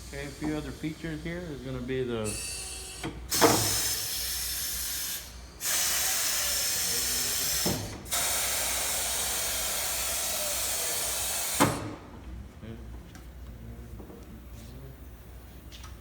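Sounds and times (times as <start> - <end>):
compressed air hissing: 2.3 - 12.0.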